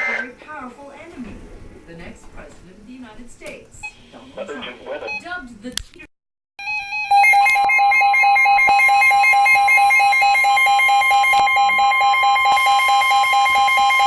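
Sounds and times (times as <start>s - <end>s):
rapid electronic beeping alarm: 6.6s - 14.0s
steady high alarm tone: 6.6s - 14.0s.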